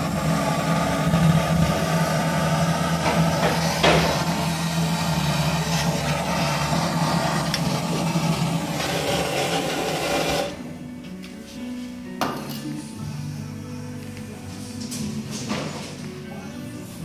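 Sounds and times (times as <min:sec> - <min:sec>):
motor humming and rasping: 0:00.0 - 0:10.7
quiet music: 0:00.0 - 0:17.0.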